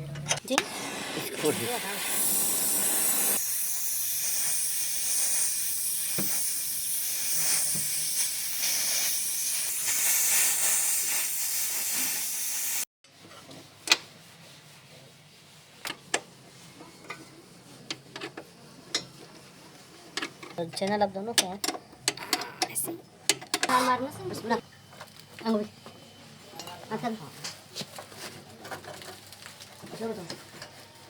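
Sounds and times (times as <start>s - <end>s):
loud steady hiss: 0.5s - 12.9s.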